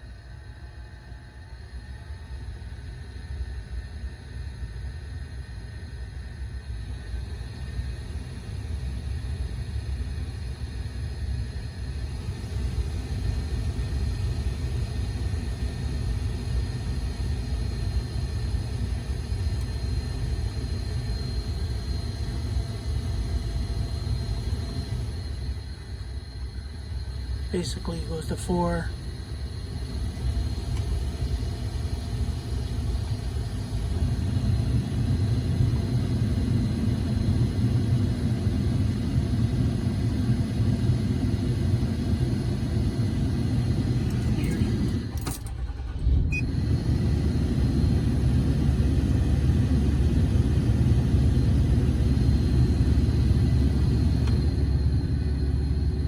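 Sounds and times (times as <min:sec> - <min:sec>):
blower fan rushing air: 0:19.4 - 0:56.0
click: 0:30.7 - 0:30.9.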